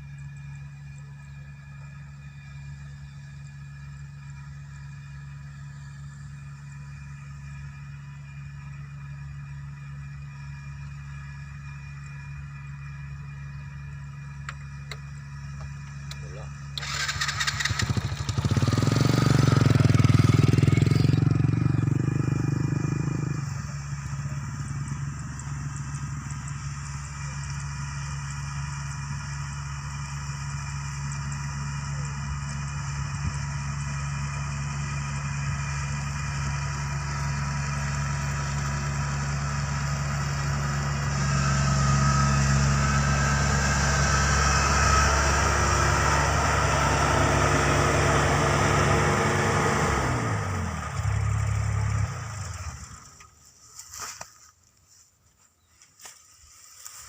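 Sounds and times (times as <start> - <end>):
combine harvester diesel engine: 0.0 - 54.0.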